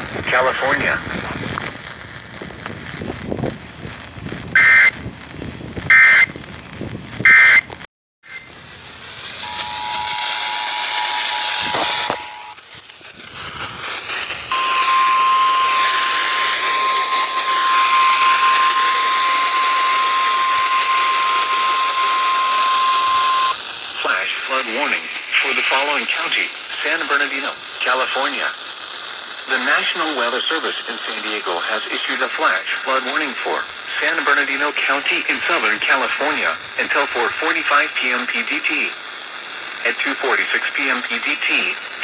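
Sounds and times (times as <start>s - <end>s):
radio hiss: 0.0s - 1.8s, 4.6s - 5.0s, 7.2s - 42.0s
squawking data bursts: 4.6s - 5.0s, 5.9s - 6.4s, 9.2s - 23.6s
steady alarm tone: 4.6s - 5.0s, 5.9s - 6.3s, 8.3s - 12.6s, 13.9s - 23.6s
two-tone attention signal: 4.6s - 5.0s, 5.9s - 6.3s, 7.3s - 7.7s, 9.4s - 12.6s, 14.5s - 23.6s.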